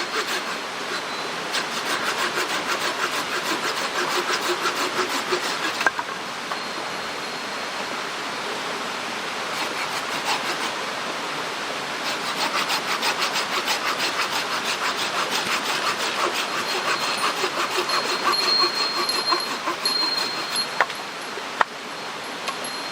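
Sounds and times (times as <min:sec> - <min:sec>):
hand saw cutting wood: 0:00.0 - 0:06.1, 0:09.4 - 0:10.8, 0:11.9 - 0:20.8.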